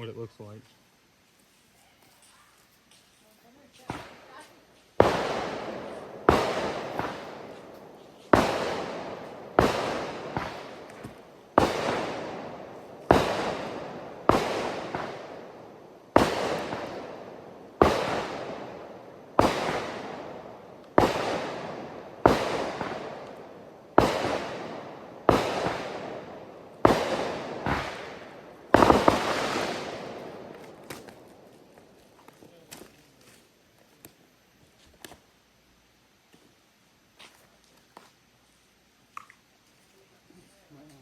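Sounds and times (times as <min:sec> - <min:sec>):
fireworks banging: 0:02.9 - 0:34.2.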